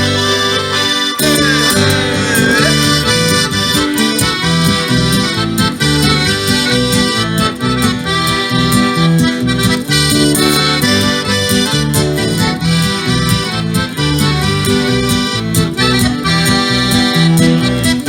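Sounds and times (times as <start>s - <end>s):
folk instrumental music: 0.0s - 18.0s.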